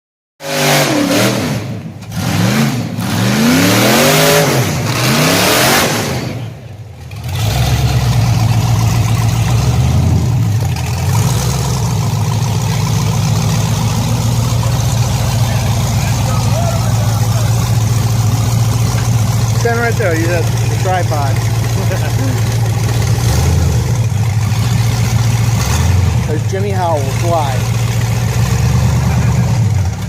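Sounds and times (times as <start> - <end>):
buggy engine revving: 0.4 - 30.0.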